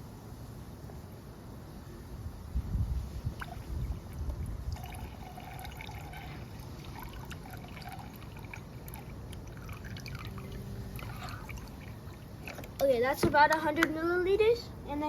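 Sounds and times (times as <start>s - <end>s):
liquid pouring into plastic cup: 3.4s - 12.3s.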